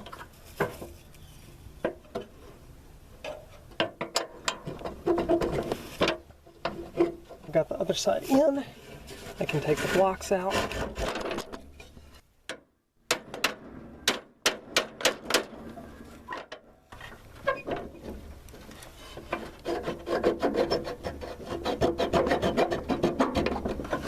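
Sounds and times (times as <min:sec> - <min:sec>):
wooden blocks rasping scrape: 0:08.3 - 0:12.2, 0:18.6 - 0:24.0.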